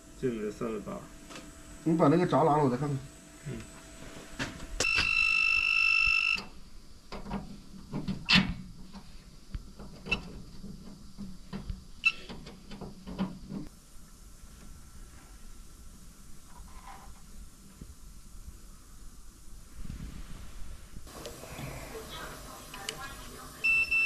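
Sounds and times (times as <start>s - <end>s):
low electrical hum: 0.0s - 24.0s
loud electronic beep: 4.8s - 6.4s.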